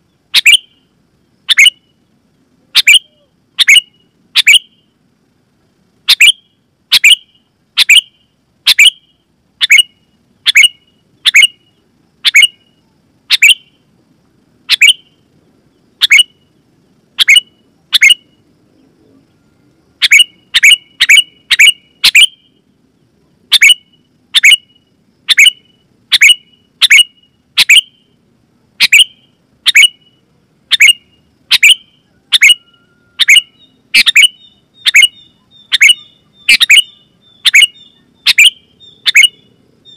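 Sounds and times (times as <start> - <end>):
bird calling sharp notes: 0.3 - 2.1, 2.7 - 5.0, 6.0 - 13.8, 14.7 - 15.2, 16.0 - 16.6, 17.2 - 18.4, 19.1 - 22.6, 23.5 - 28.2, 28.8 - 39.9.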